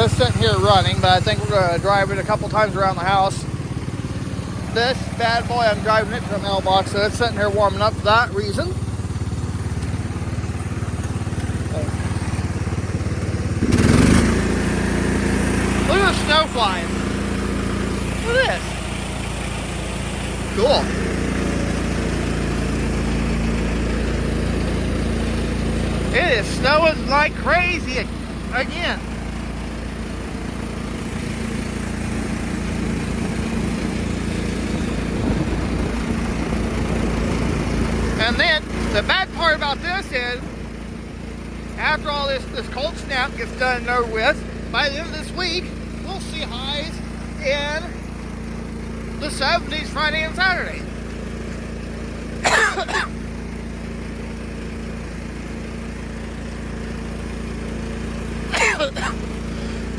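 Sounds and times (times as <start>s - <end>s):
riding mower engine idling: 0.0s - 59.9s
person coughing: 52.4s - 53.2s, 58.5s - 59.2s.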